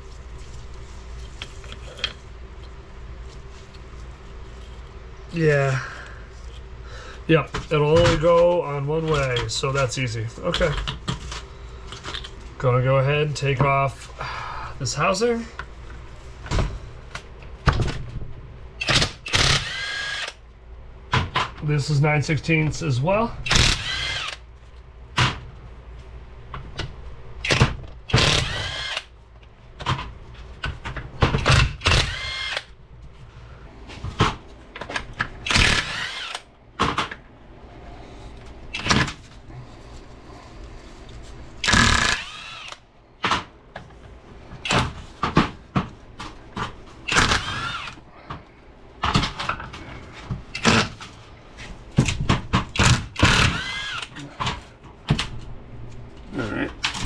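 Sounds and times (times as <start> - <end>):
power tool bursts: 18.8 - 20.4, 23.4 - 24.4, 27.4 - 29.1, 31.5 - 32.7, 35.4 - 36.5, 41.6 - 42.8, 47.1 - 48.0, 52.8 - 54.1.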